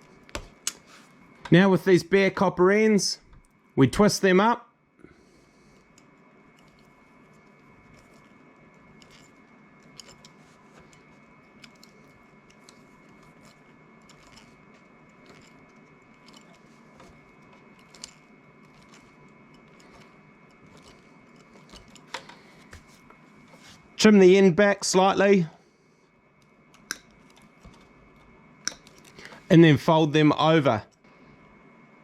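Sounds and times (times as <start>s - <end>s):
copper wires being twisted: 0.0s - 1.6s, 5.8s - 23.6s.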